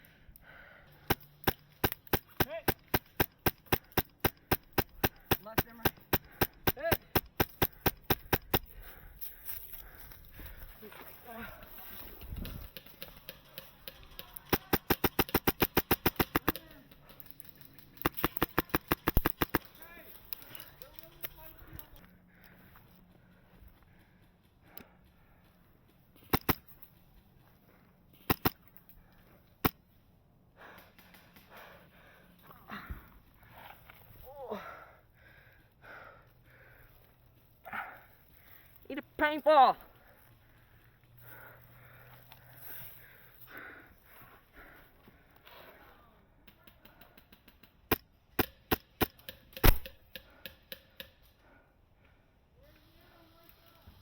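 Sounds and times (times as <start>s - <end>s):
paintball gun shots: 1.0s - 8.8s, 12.4s - 17.2s, 17.9s - 19.8s, 26.2s - 26.8s, 28.2s - 28.7s, 47.8s - 51.1s
faint rapid clicks: 12.2s - 22.6s.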